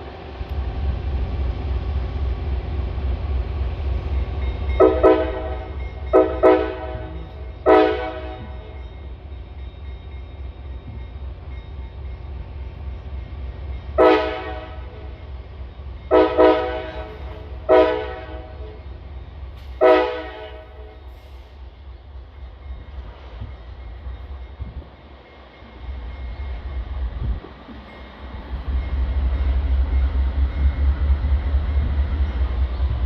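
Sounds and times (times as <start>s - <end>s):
locomotive air horn blasts: 4.8s - 8.6s, 14.0s - 15.1s, 16.1s - 18.8s, 19.8s - 21.1s.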